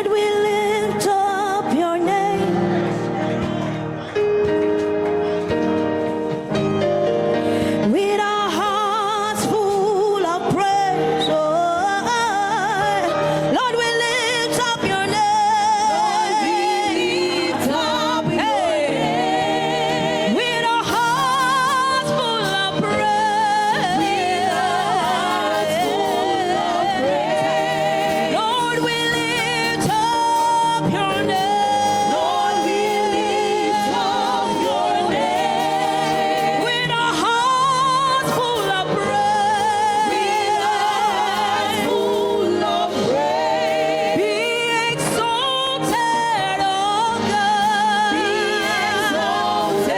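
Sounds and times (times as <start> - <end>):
gospel singing with vibrato: 0.0 - 49.9
musical accompaniment: 0.0 - 49.9.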